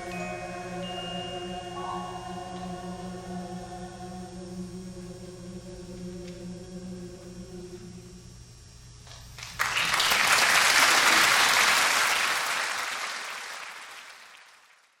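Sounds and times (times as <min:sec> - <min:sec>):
choir singing held chord: 0:00.0 - 0:08.3
audience applause: 0:09.4 - 0:15.0.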